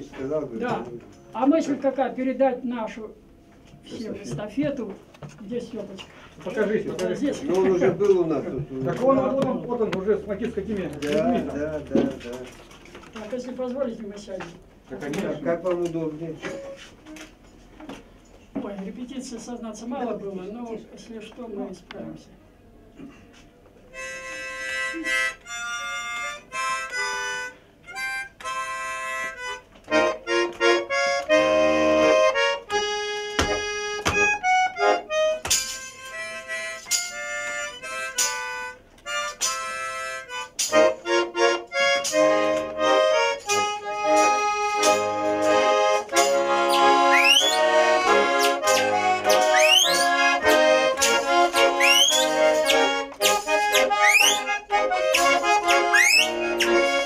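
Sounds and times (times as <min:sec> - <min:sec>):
button accordion folk tune: 0:06.5 - 0:12.4, 0:23.3 - 0:57.0
rising whistled slides: 0:47.1 - 0:47.6, 0:49.4 - 0:50.1, 0:51.8 - 0:52.3, 0:55.9 - 0:56.4.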